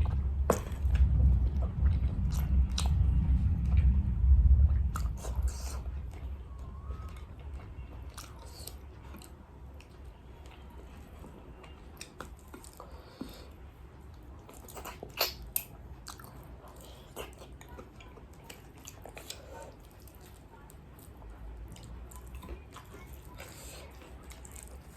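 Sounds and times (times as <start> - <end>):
chewing crispy food: 0.0 - 24.9
wet mouth clicks: 14.8 - 16.2.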